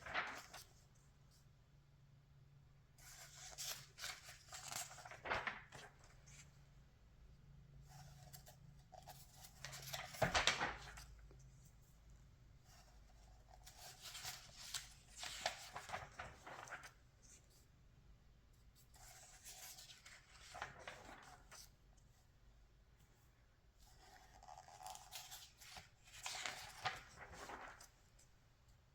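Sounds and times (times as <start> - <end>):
magazine pages rustling: 0.0 - 0.8, 3.0 - 6.6, 8.4 - 11.4, 13.5 - 17.5, 18.9 - 21.8, 23.9 - 28.5.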